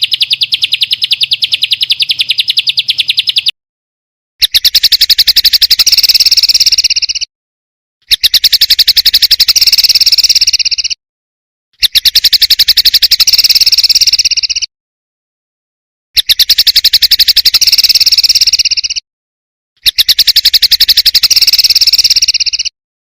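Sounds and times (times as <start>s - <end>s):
songbird buzzing trill: 0.0s - 3.5s, 4.4s - 7.3s, 8.1s - 11.0s, 11.8s - 14.7s, 16.2s - 19.0s, 19.8s - 22.7s.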